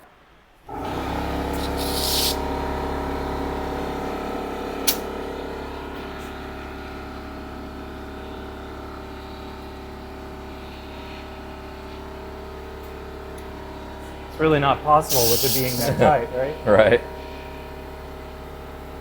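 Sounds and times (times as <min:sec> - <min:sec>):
electric motor humming: 0:00.7 - 0:04.3, 0:14.4 - 0:17.4
sharp click: 0:04.9 - 0:05.1.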